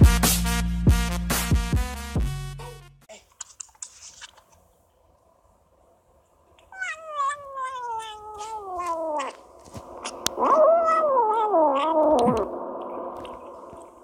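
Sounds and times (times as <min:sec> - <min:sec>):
kitten moaning calls: 0:06.6 - 0:12.5
chewing clicks: 0:08.4 - 0:10.4.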